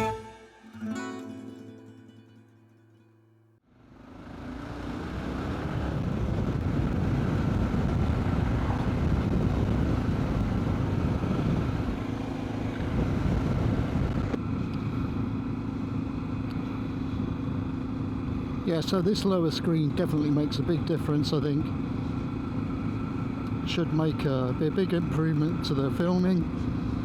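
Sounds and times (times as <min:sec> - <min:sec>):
motorcycle engine running: 0:04.0 - 0:18.6
wind rush: 0:05.5 - 0:14.4.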